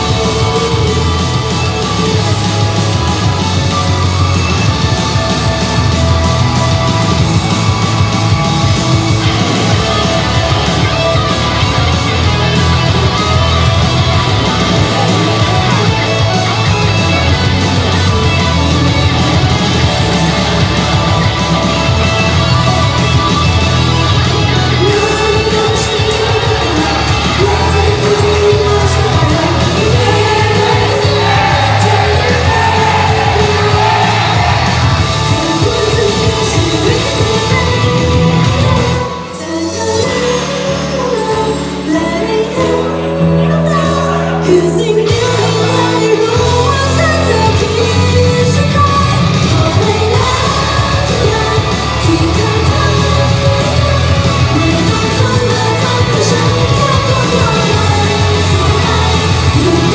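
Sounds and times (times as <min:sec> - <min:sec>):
person singing: 0:00.0 - 0:03.8, 0:24.1 - 0:59.9
fans shouting: 0:00.0 - 0:39.0
pop rock song over pa: 0:00.0 - 0:59.9.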